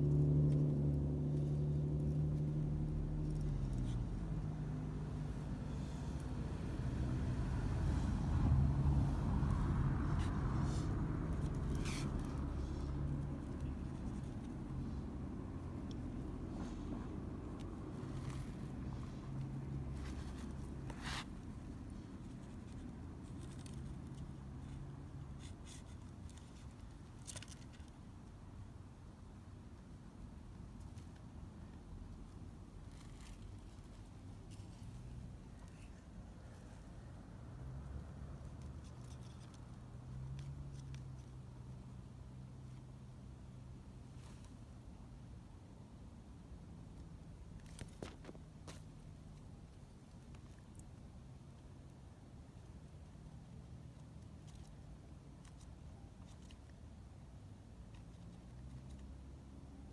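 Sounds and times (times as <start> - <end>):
vehicle engine humming: 0.0 - 27.0
low steady hum: 0.0 - 59.9
rustling scrapes: 7.8 - 28.0, 30.8 - 37.1, 38.4 - 41.8, 43.9 - 44.8.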